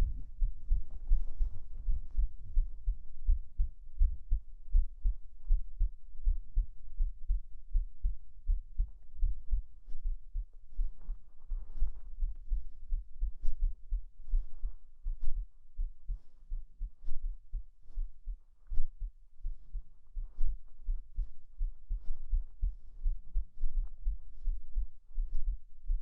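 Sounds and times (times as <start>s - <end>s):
heartbeat thumps: 0.0s - 26.0s.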